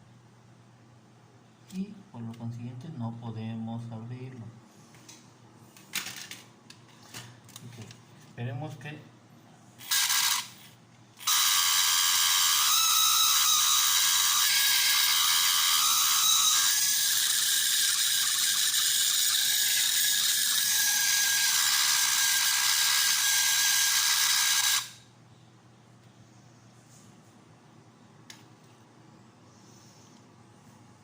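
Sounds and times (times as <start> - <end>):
toy motor whirring: 9.8 - 25.0.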